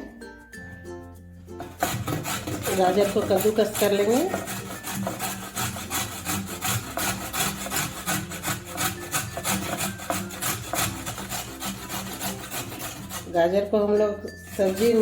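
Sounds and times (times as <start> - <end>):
carrot grating on a grater: 1.6 - 13.7, 14.4 - 15.0.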